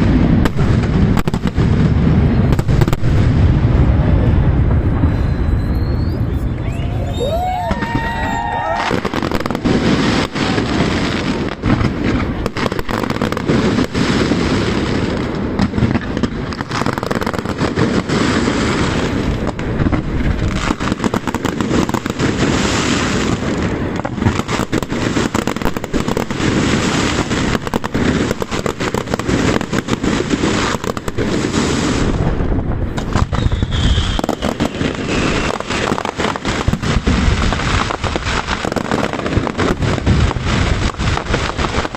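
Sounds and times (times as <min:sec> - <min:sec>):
fireworks shell bursts and crackling: 0:07.8 - 0:32.1, 0:32.8 - 0:41.9.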